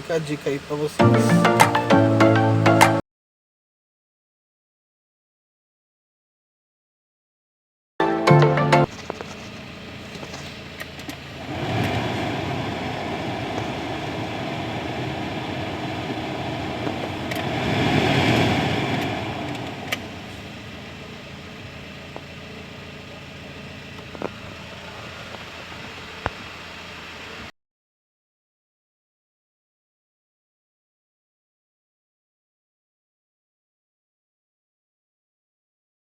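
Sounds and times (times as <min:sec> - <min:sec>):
car engine running: 0:00.0 - 0:02.1, 0:08.9 - 0:17.6, 0:18.4 - 0:27.5.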